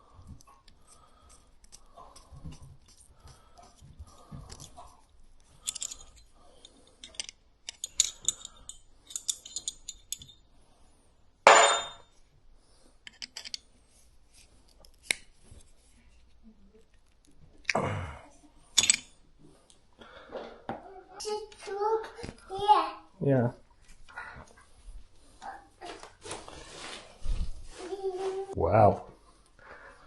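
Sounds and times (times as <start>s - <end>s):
hand tools clinking and scraping: 0.9s - 10.4s, 11.5s - 12.1s, 13.1s - 13.7s, 18.7s - 19.2s.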